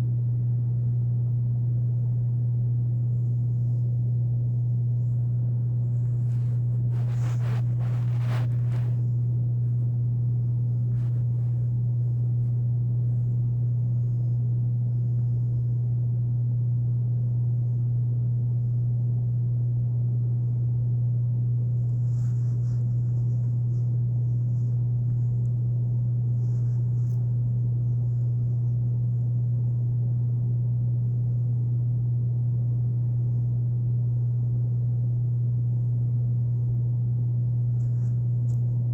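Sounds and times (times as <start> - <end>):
air conditioner humming: 0.0 - 38.9
faint rustles: 3.1 - 15.8, 21.6 - 30.0, 37.6 - 38.9.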